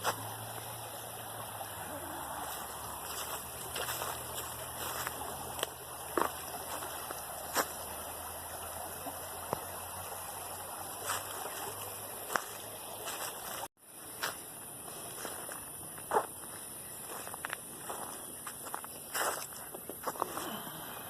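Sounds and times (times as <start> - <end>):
stream running: 0.0 - 21.0.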